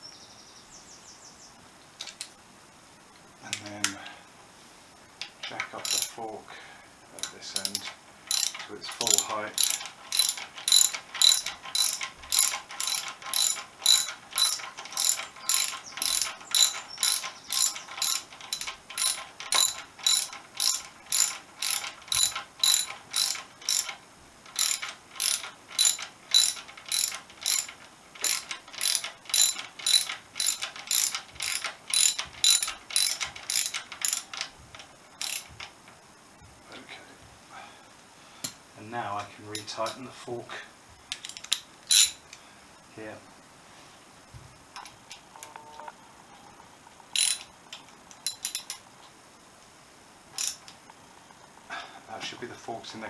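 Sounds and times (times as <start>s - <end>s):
ratchet wrench clicking: 5.2s - 6.2s, 7.2s - 35.7s, 41.2s - 42.2s, 47.2s - 47.5s, 48.2s - 48.9s, 50.4s - 50.8s.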